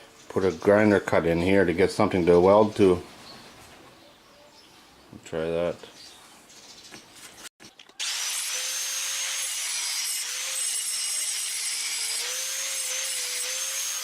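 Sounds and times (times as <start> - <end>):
angle grinder cutting steel: 8.0 - 14.0.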